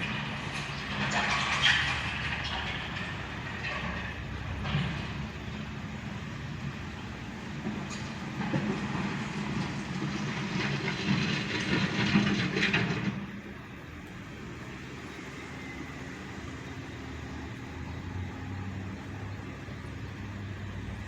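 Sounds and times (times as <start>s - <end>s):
gravel scraping and clattering: 0.0s - 5.9s, 7.5s - 14.4s
diesel engine running: 0.0s - 21.0s.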